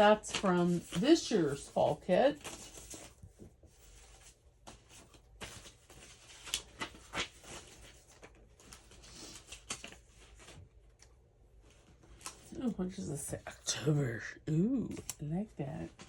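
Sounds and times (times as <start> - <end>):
paper rustling: 0.0 - 13.2.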